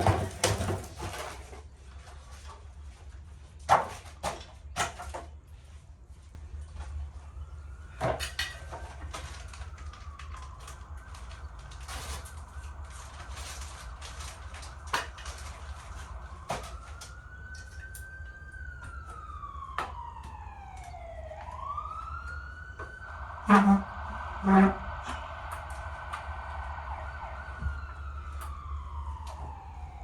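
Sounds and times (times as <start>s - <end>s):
emergency siren wailing: 6.8s - 30.0s.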